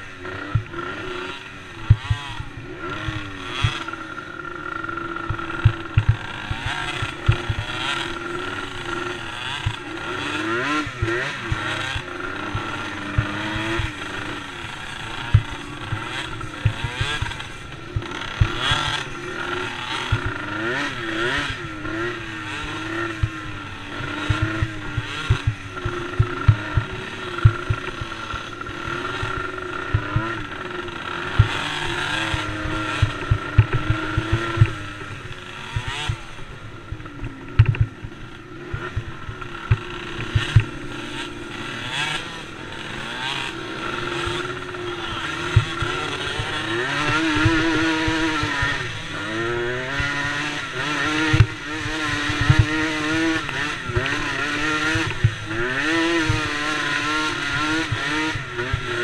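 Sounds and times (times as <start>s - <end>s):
small atv engine revving: 0.0s - 59.0s.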